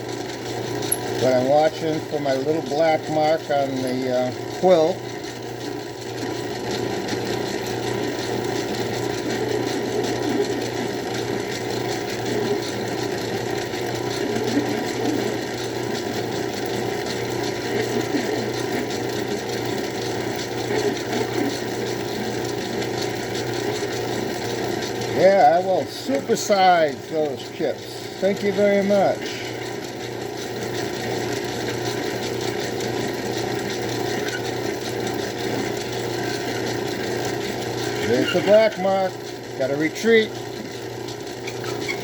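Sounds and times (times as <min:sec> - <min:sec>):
drill bit cutting metal: 0:00.0 - 0:42.0
lathe motor hum: 0:00.0 - 0:42.0.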